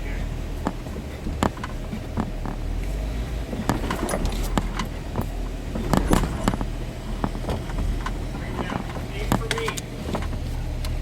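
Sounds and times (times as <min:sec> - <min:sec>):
engine rumble: 0:00.0 - 0:11.0
clicks knocks and rattles: 0:00.6 - 0:02.7, 0:03.4 - 0:10.5.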